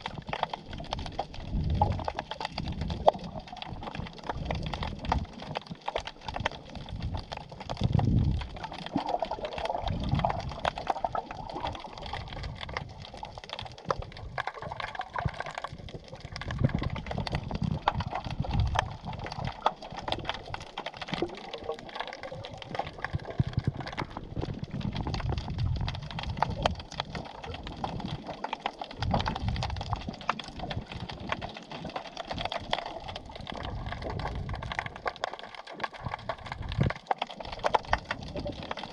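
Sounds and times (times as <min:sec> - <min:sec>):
underwater crackle of tiny clicks: 0:00.0 - 0:38.9
water surges and sloshing: 0:00.0 - 0:38.9.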